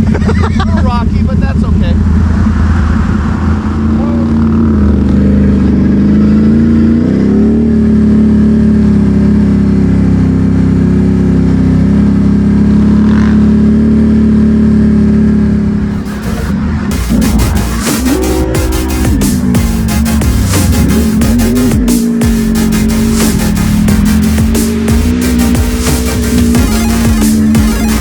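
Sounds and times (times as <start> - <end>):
atv engine running: 0.0 - 28.0.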